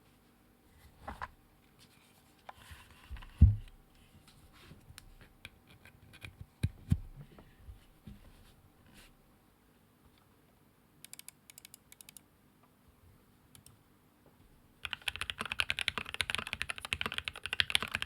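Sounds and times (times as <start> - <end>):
keyboard clicks and rubbing: 14.8 - 18.0.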